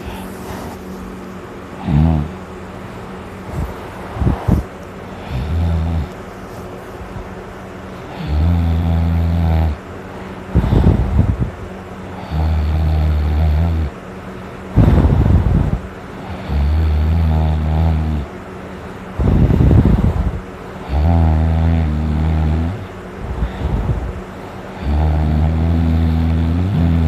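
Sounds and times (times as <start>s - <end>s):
loud snoring: 1.8s - 2.4s, 3.5s - 6.2s, 8.1s - 9.8s, 10.5s - 11.5s, 12.2s - 14.0s, 14.8s - 18.3s, 19.2s - 24.1s, 24.7s - 27.0s.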